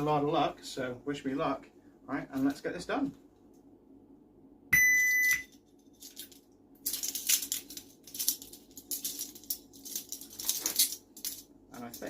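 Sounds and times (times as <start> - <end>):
electronic timer beep: 4.7 - 5.5
metal handcuffs clinking: 5.7 - 12.0.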